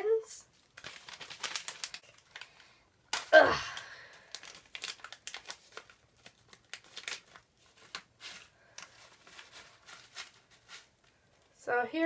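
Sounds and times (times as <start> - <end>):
plastic snack packet crinkling: 0.4 - 11.6
packet tearing: 0.6 - 11.0.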